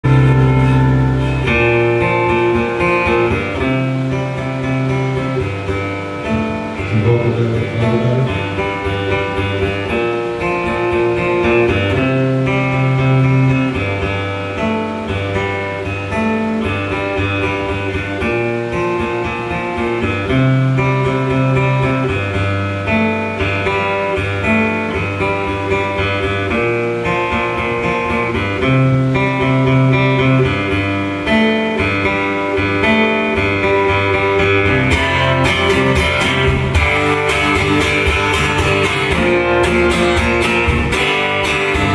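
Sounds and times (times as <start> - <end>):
acoustic guitar strummed hard: 0.0 - 41.9.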